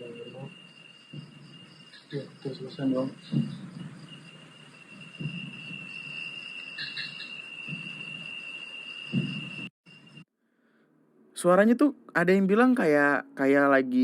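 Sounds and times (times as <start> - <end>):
crickets trilling: 0.0 - 10.2
low dull thumps: 1.1 - 2.4, 3.1 - 6.2, 9.1 - 9.7.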